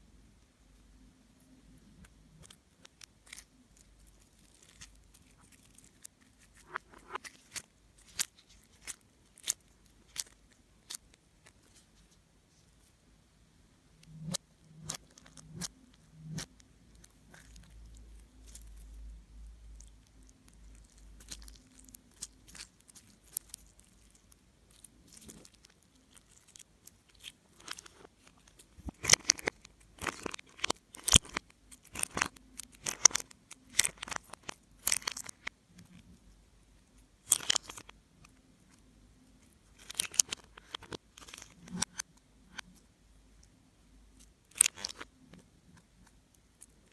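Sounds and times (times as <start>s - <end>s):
slime crackling and popping: 2.4s - 11.7s, 19.6s - 35.5s, 44.4s - 45.1s.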